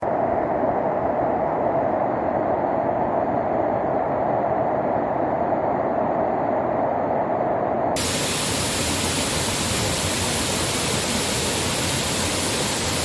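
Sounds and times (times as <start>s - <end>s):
waterfall roar: 8.0s - 13.0s.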